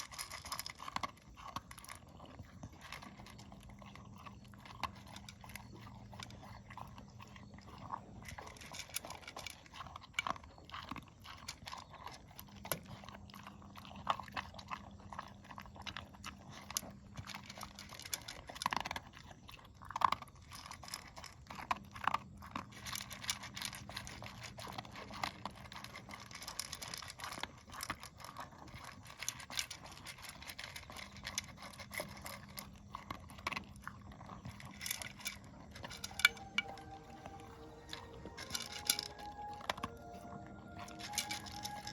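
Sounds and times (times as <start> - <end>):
pet chewing and crunching food: 0.0 - 41.9
low hum: 34.9 - 41.9.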